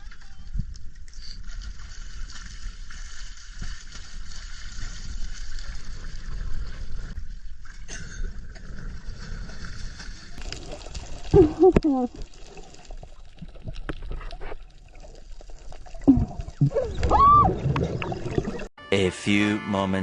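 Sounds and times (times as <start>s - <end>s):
sea water rushing and sloshing: 1.4s - 7.6s, 12.2s - 18.7s
water gurgling: 8.3s - 18.7s.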